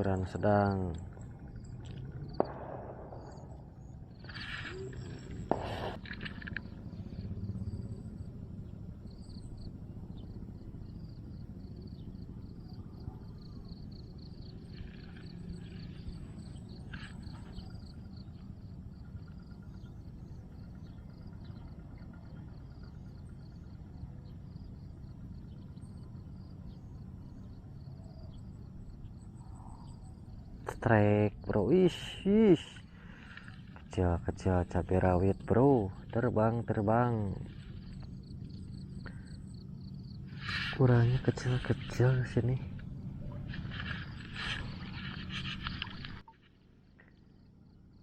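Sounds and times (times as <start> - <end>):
insects chirping: 0.0 - 48.0
steady low rumble: 0.0 - 48.0
rustling: 42.6 - 46.2.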